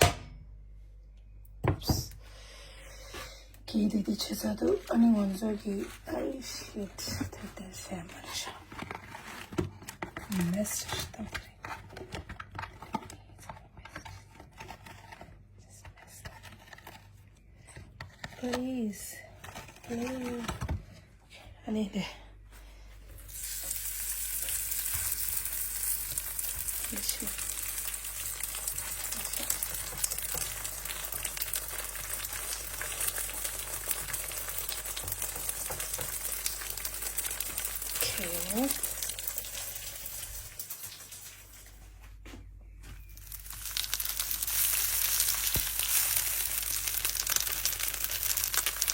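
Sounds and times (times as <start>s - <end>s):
packaging crinkling and rustling: 4.1s - 15.5s, 23.5s - 42.0s, 43.2s - 48.9s
food sizzling in hot oil: 23.3s - 41.6s, 43.3s - 48.9s.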